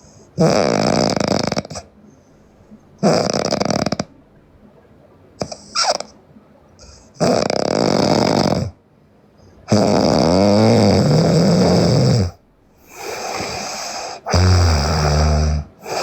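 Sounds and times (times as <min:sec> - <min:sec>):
woman snoring loudly: 0:00.4 - 0:01.9, 0:03.0 - 0:04.1, 0:07.2 - 0:08.8, 0:09.7 - 0:16.0.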